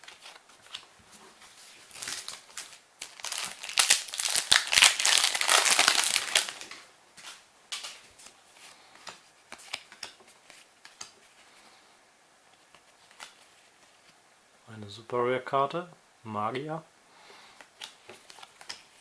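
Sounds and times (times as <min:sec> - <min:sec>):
foil wrapper crinkling: 0:01.8 - 0:06.7.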